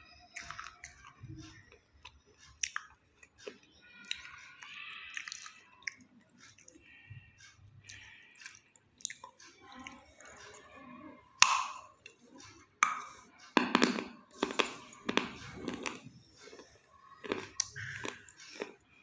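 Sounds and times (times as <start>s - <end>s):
crunchy biting and chewing: 13.0s - 18.8s.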